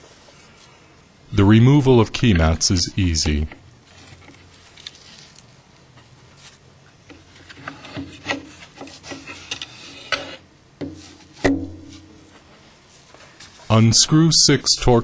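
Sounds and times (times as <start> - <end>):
plastic parts scraping: 7.1 - 10.4.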